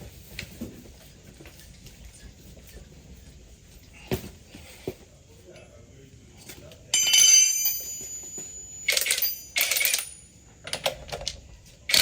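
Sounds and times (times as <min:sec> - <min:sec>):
sharp metallic clink: 0:07.0 - 0:10.4.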